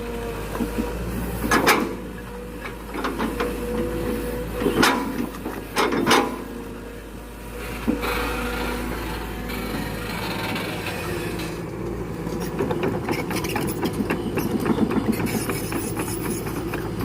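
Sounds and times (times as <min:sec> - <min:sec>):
excavator engine running: 0:00.0 - 0:17.0.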